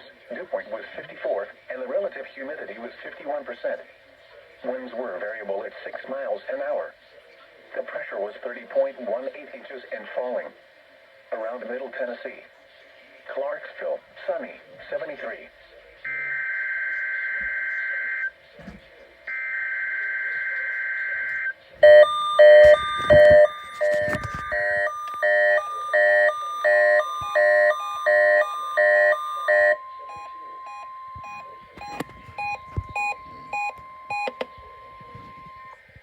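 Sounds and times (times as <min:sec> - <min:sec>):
faint steady tone: 0:10.2 - 0:36.0
alert receiver alarm beeping: 0:19.3 - 0:35.8.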